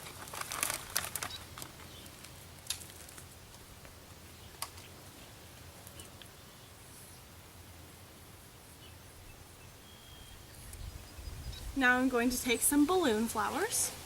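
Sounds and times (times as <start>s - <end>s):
hands rustling in potting soil: 0.0s - 6.4s.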